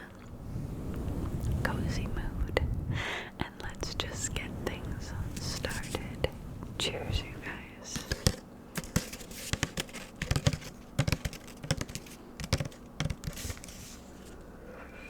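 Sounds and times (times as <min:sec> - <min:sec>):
quick light taps and clicks: 0:07.9 - 0:13.9.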